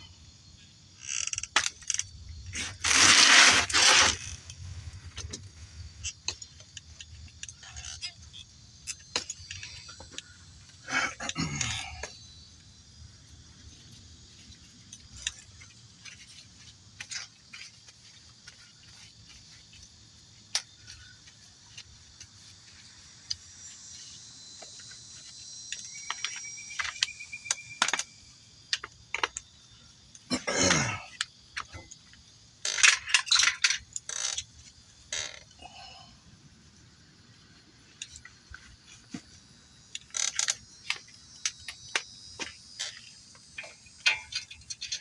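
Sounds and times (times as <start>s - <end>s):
metal tools clinking and rattling: 32.7s - 34.4s, 42.8s - 45.0s.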